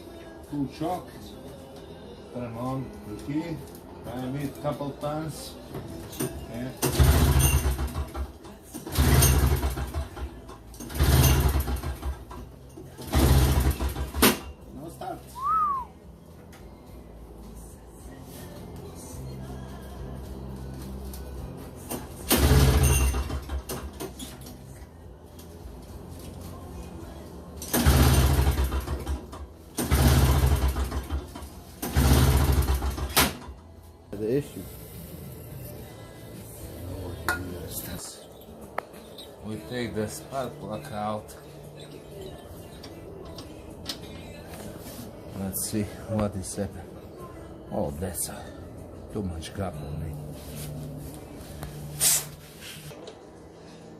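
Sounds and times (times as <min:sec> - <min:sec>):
snowblower engine cranking: 0:06.9 - 0:12.4, 0:13.0 - 0:14.2, 0:22.2 - 0:23.9, 0:27.6 - 0:33.4.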